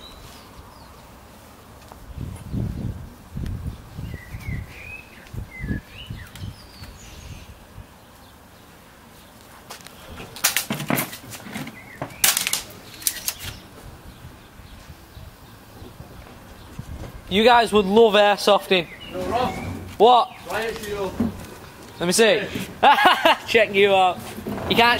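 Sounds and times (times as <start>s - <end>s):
small bird chirping: 3.6s - 9.4s.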